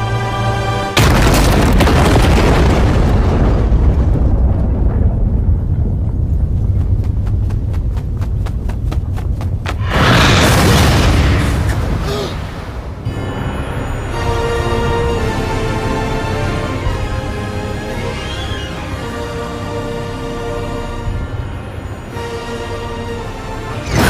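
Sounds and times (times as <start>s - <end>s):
music: 0.0s - 1.1s, 13.0s - 24.0s
huge explosion blast: 1.0s - 6.6s, 9.8s - 13.0s
long deep rumble: 1.1s - 11.9s.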